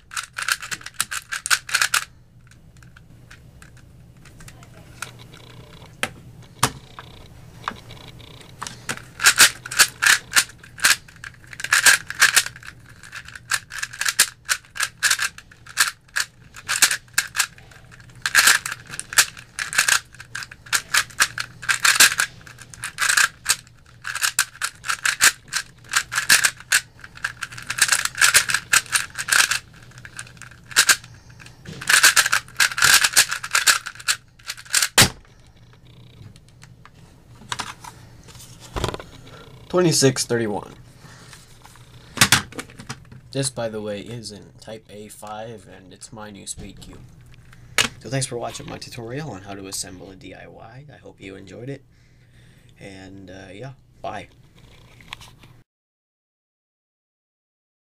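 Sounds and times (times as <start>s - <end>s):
speed cube clicking: 0.1s - 2.1s, 9.2s - 31.1s, 31.7s - 35.0s.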